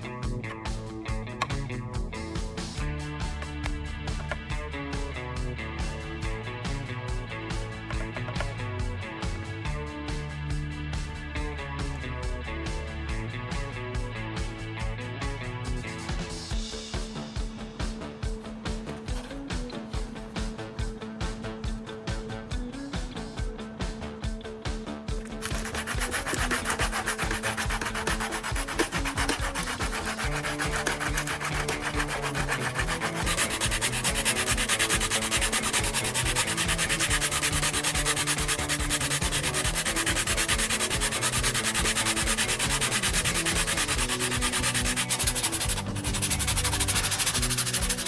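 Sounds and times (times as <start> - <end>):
sanding plastic: 25.2 - 48.0.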